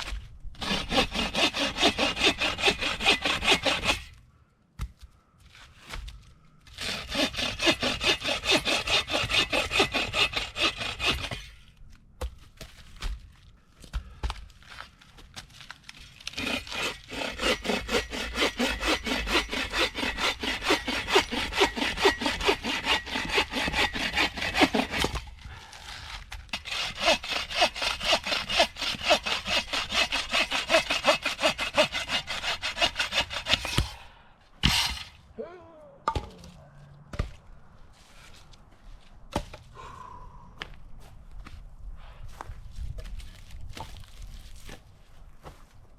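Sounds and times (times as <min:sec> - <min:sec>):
hand saw cutting wood: 0:00.0 - 0:04.2, 0:06.7 - 0:11.6, 0:16.2 - 0:35.2.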